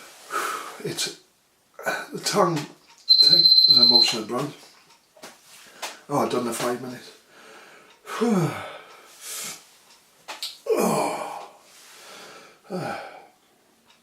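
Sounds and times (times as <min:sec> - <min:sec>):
hard breathing: 0:07.3 - 0:09.7, 0:11.1 - 0:13.5
man groaning in pain: 0:08.1 - 0:08.8, 0:10.7 - 0:11.6, 0:12.7 - 0:13.2.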